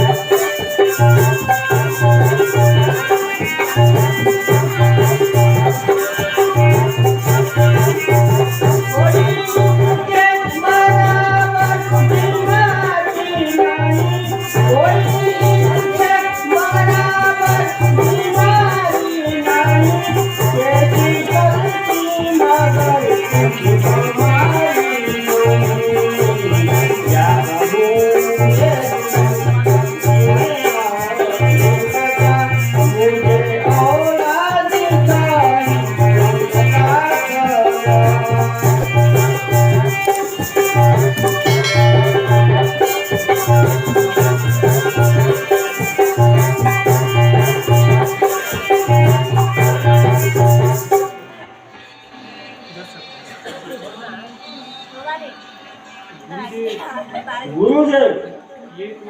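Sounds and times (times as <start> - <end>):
low beat: 35.1 - 51.1
rattling shaker: 35.8 - 51.1
melody: 37.9 - 51.2.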